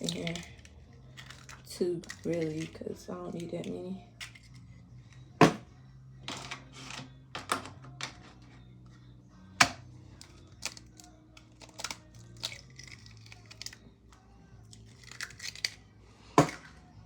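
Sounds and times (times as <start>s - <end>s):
eggs cracking against bowl: 0.0s - 4.7s, 9.6s - 13.9s, 14.7s - 16.8s.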